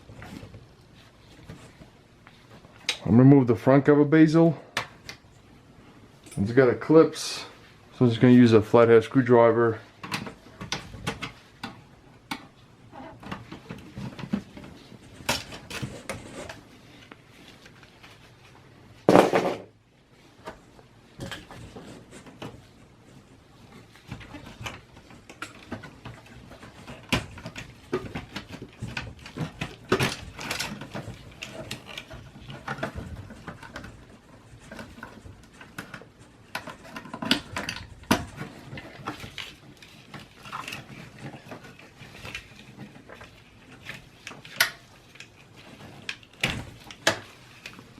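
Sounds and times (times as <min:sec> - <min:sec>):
plastic and metal clicks and knocks: 0:24.1 - 0:47.9.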